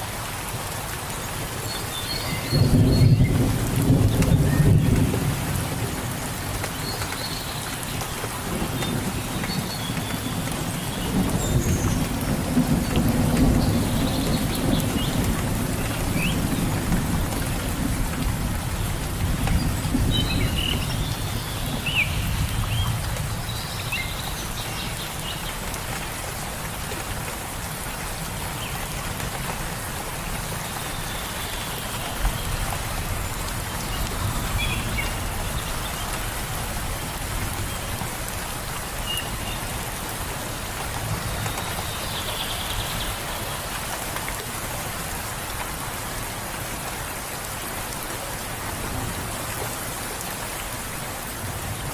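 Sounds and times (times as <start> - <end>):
steady rain: 0.0 - 51.9
low rumble of thunder: 2.5 - 6.6, 8.4 - 23.7.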